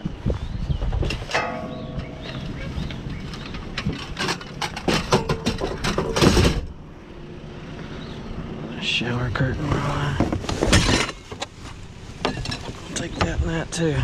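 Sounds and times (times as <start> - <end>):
junk knocking and rattling: 0.8 - 6.9, 9.4 - 11.6, 12.2 - 13.5.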